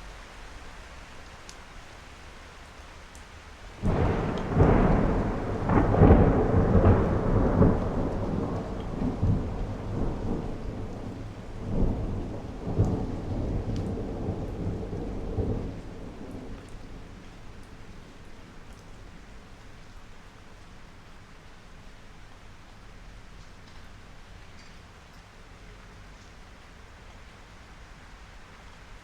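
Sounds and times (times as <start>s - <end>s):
steady rain: 0.0s - 29.0s
thunder rumbling: 3.8s - 19.5s.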